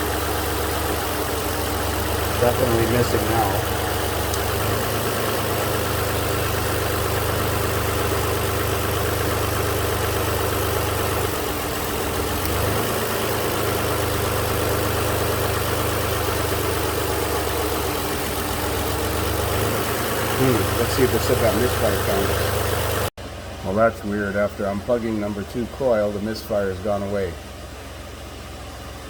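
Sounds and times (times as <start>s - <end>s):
car engine idling with misfire: 0.0s - 29.0s.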